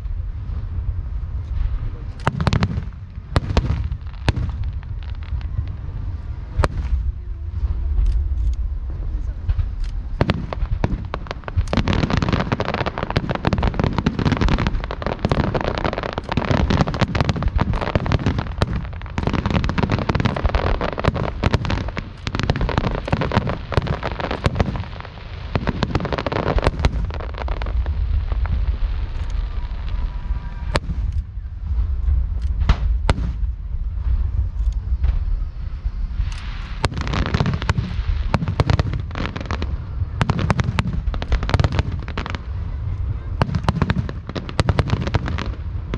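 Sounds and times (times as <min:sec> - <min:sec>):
fireworks bursting and crackling: 0:00.0 - 0:45.9.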